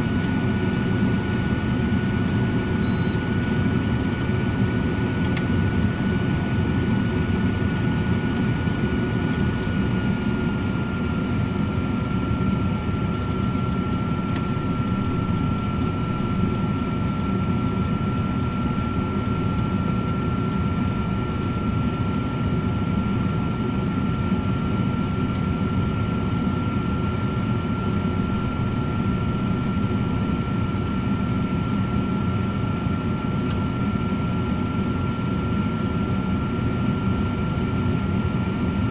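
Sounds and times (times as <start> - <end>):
air fryer fan whir: 0.0 - 38.9.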